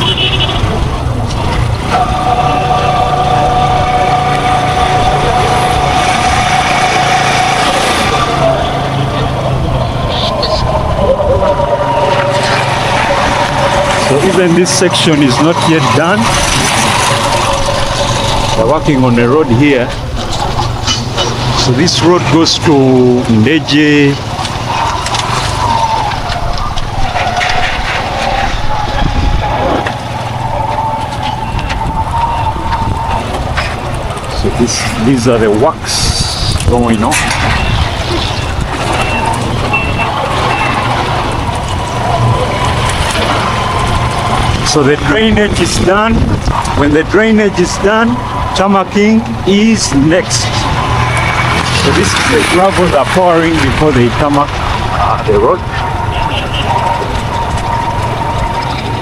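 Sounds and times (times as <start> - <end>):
high whine: 0.0 - 59.0
road noise: 0.0 - 59.0
vehicle engine running: 0.0 - 59.0
steady high hum: 1.1 - 35.1.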